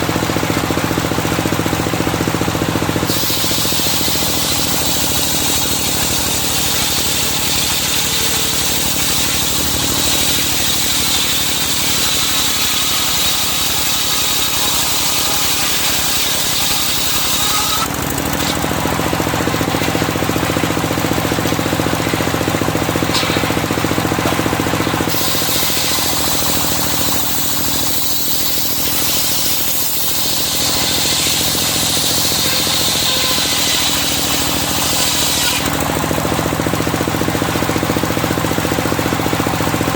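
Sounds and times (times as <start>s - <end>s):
sawmill engine knocking: 0.0s - 39.9s
high hiss of sawing: 3.1s - 18.5s, 25.0s - 35.8s.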